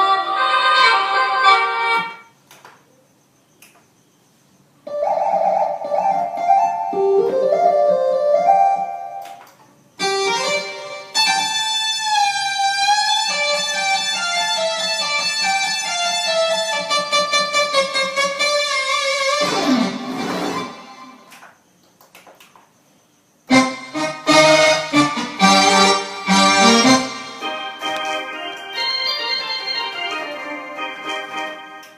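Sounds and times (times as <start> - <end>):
keyboard guitar-like melody: 4.9 - 21.3, 23.5 - 31.9.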